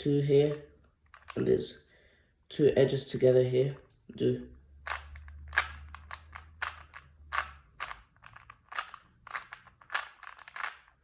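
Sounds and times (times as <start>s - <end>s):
plastic puzzle cube clacking turns: 0.4s - 1.4s, 4.8s - 11.0s.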